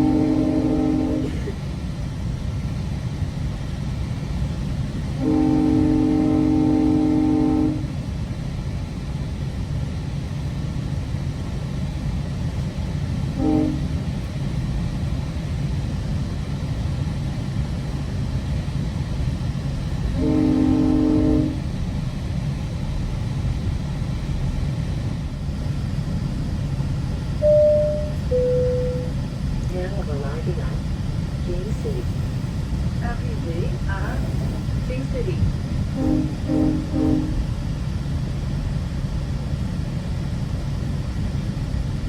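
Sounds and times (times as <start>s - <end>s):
train horn blasts: 0.0s - 1.5s, 5.2s - 7.9s, 13.4s - 14.0s, 20.2s - 21.7s, 27.4s - 29.1s, 35.9s - 37.5s
moving train rumble: 0.0s - 42.0s.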